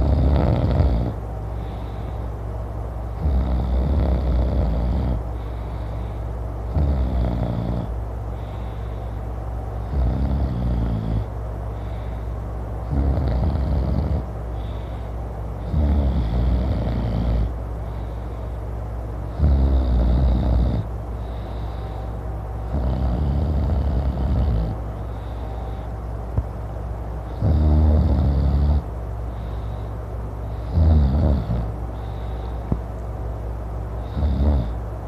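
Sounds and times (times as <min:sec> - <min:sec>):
man snoring loudly: 0:00.0 - 0:01.2, 0:03.2 - 0:05.2, 0:06.7 - 0:07.9, 0:09.8 - 0:11.3, 0:12.9 - 0:14.2, 0:15.6 - 0:17.5, 0:19.4 - 0:20.9, 0:22.7 - 0:24.8, 0:27.4 - 0:28.8, 0:30.6 - 0:31.7, 0:34.0 - 0:34.8.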